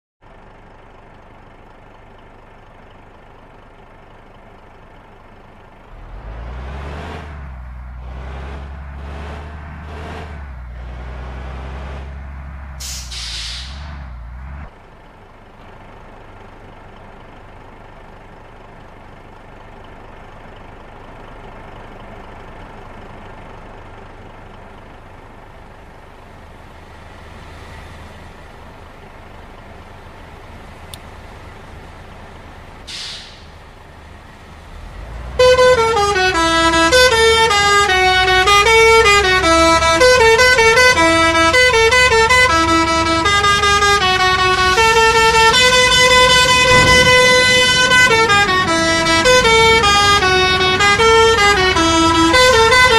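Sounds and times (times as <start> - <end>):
vehicle drone: 0.2 - 52.9
air hiss: 12.8 - 13.9, 32.9 - 33.5
bus air horns pulsing: 12.8 - 13.9, 35.2 - 52.9.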